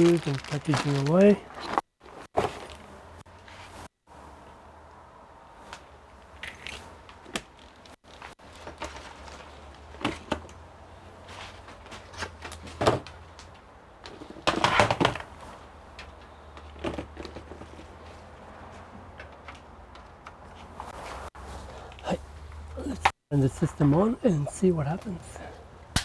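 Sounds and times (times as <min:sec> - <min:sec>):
packaging rustling: 0:00.0 - 0:01.8.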